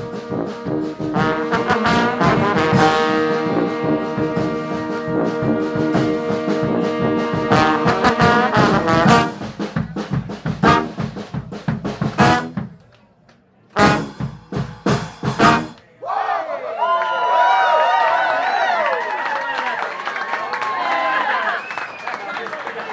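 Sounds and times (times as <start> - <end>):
brass band with drums playing: 0.0 - 12.9, 13.7 - 15.8.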